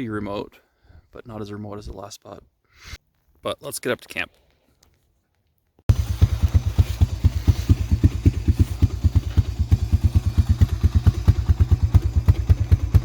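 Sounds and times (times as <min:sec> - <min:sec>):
vehicle engine running low: 0:05.9 - 0:13.0.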